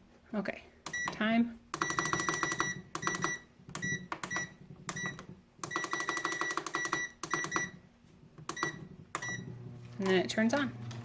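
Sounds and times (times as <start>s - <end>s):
control panel beeping: 0.9s - 1.2s, 1.8s - 7.8s, 8.5s - 10.2s.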